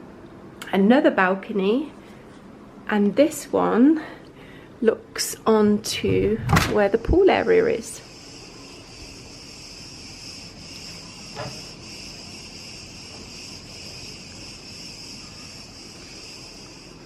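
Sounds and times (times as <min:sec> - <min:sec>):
insects chirring: 0:06.8 - 0:17.0.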